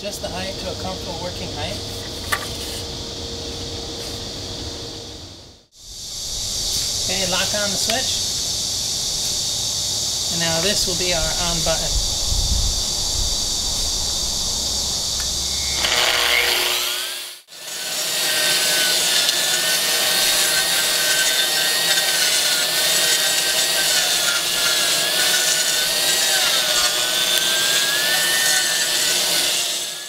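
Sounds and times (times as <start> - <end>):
concrete grinder grinding: 15.2 - 30.0.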